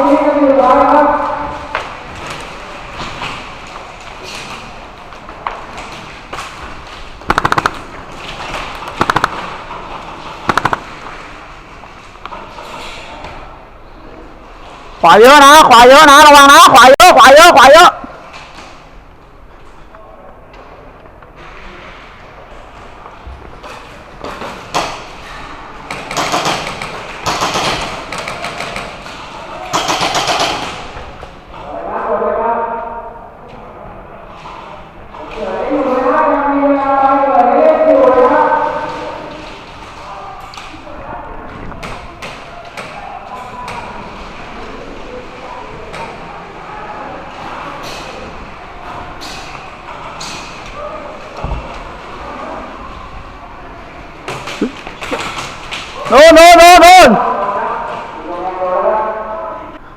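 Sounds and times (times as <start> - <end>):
airsoft guns firing bursts: 7.3 - 7.9, 8.8 - 9.6, 10.5 - 11.0, 29.7 - 30.7.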